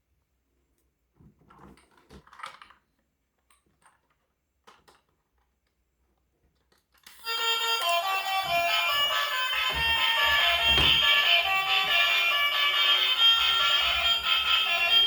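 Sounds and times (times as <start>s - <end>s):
music: 7.2s - 15.0s.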